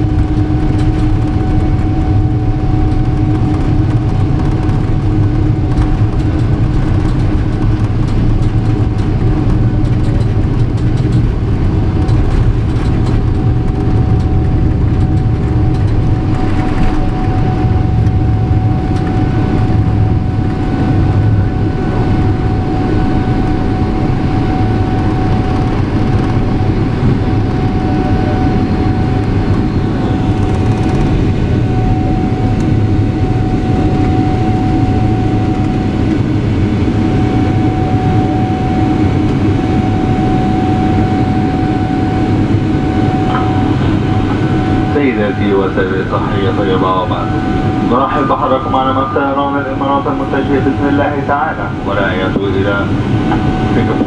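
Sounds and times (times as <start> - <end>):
airliner cabin engine rumble: 0.0 - 54.0
mid-pitched hum: 0.0 - 54.0.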